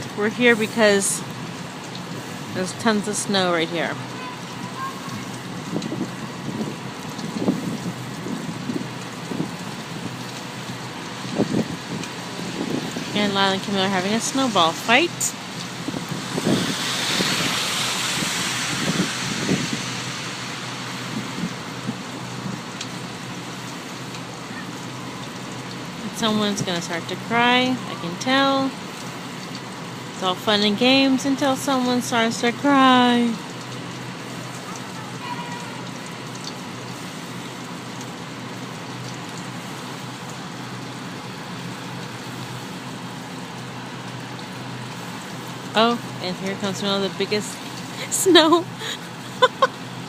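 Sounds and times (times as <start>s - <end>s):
snowstorm hiss: 11.4s - 22.6s.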